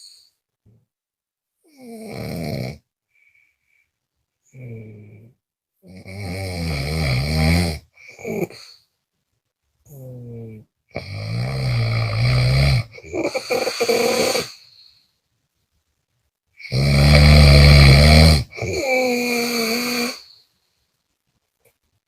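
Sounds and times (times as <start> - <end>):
person snoring loudly: 1.7 - 2.8, 4.5 - 8.7, 9.9 - 14.6, 16.6 - 20.4.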